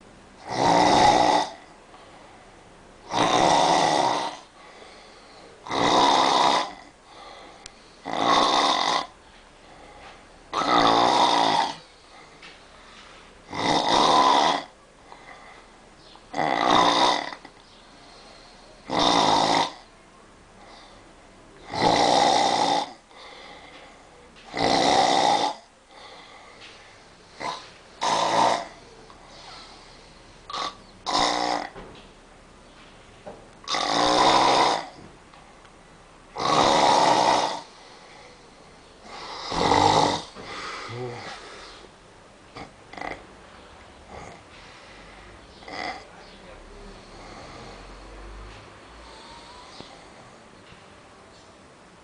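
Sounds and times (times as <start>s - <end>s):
loud snoring: 0.4s - 1.7s, 3.0s - 4.5s, 5.6s - 9.2s, 10.5s - 12.3s, 13.4s - 15.6s, 16.3s - 17.5s, 18.2s - 19.9s, 21.6s - 26.6s, 27.2s - 31.8s, 33.6s - 35.0s, 36.3s - 38.4s, 39.0s - 41.8s, 42.6s - 43.2s, 44.0s - 44.7s, 45.5s - 50.4s
quiet breathing: 1.9s - 2.8s, 4.4s - 5.7s, 6.9s - 8.2s, 9.2s - 10.5s, 11.7s - 13.5s, 14.7s - 16.2s, 17.5s - 18.9s, 19.8s - 21.6s, 23.0s - 24.5s, 25.7s - 28.0s, 28.6s - 30.9s, 37.6s - 42.0s, 43.6s - 51.4s.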